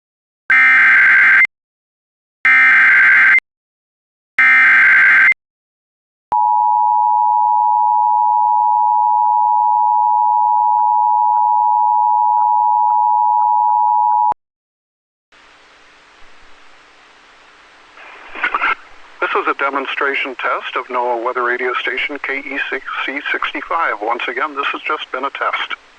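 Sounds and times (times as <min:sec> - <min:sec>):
faint radio hiss: 0:15.4 - 0:25.9.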